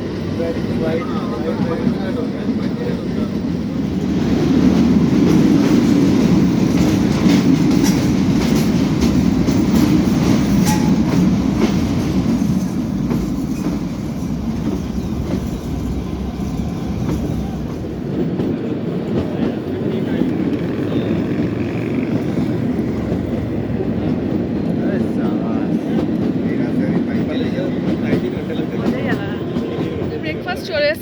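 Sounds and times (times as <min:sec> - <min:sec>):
train coach rumbling on track: 0:00.0 - 0:31.0.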